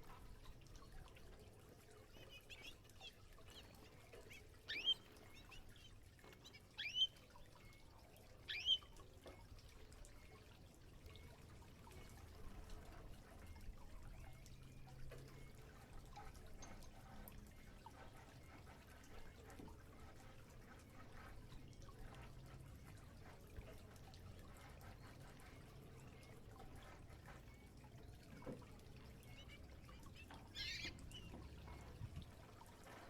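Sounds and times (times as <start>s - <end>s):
faint trickling water: 0.0s - 33.0s
canary chirping: 4.3s - 7.2s, 8.5s - 8.9s, 30.5s - 31.4s.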